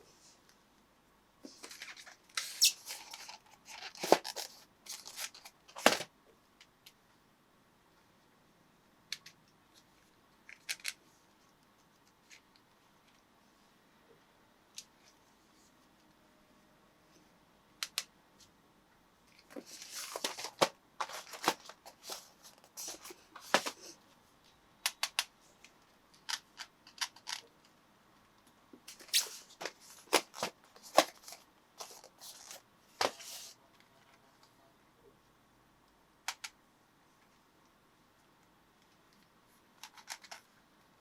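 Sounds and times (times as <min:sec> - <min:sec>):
packaging clicks and rustles: 0:01.6 - 0:06.1, 0:19.4 - 0:23.9, 0:28.9 - 0:33.5.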